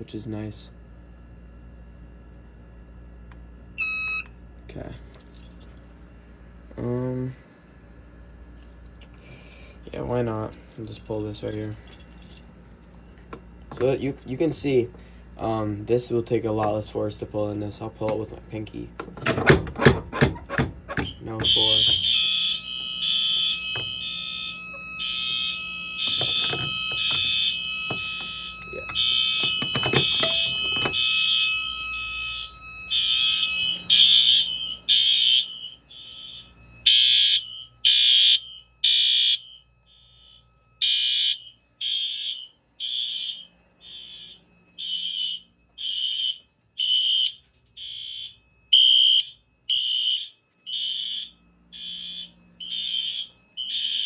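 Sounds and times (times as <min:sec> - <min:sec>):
fire alarm horns pulsing: 0:03.8 - 0:05.8, 0:08.6 - 0:54.0
steady lower tone: 0:08.6 - 0:34.9.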